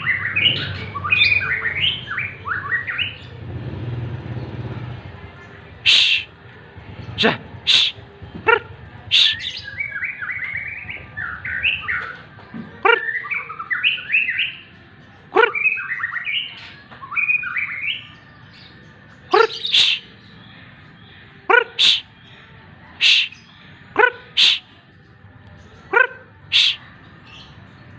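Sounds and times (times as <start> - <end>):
harsh bird calls: 5.8 - 6.4, 7.0 - 14.7, 15.3 - 24.9, 25.7 - 27.6
bird chirping warble: 19.3 - 20.1.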